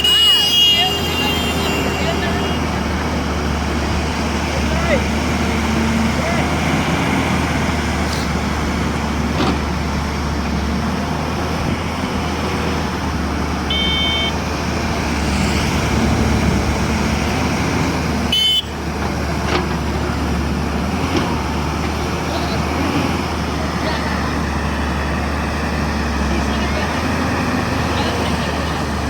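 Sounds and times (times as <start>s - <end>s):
excavator diesel engine running: 0.0s - 29.0s
brief high tone: 13.7s - 14.4s
short high horn toot: 13.7s - 14.4s, 18.3s - 18.7s.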